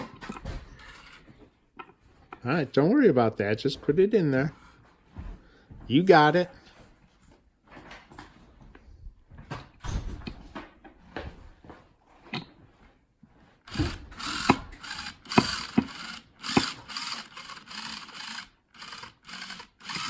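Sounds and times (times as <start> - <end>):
drill driving screw into wood: 0.0 - 1.3, 13.7 - 20.0.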